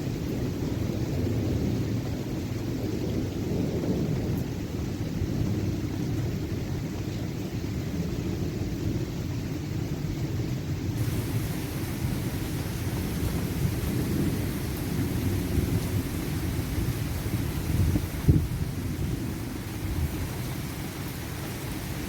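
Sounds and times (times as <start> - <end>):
thunder rumbling: 0.2 - 7.0, 11.0 - 22.0.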